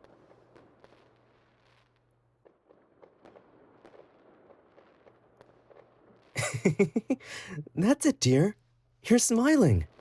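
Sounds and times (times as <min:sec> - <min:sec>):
distant fireworks pops and crackles: 0:00.0 - 0:06.4.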